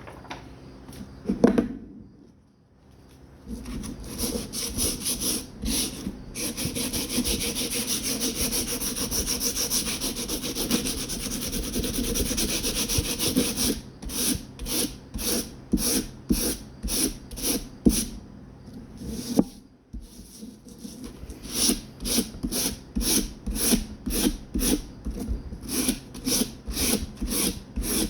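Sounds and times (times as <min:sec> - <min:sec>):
sandpaper rubbing by hand: 0:03.6 - 0:18.1, 0:20.2 - 0:28.0.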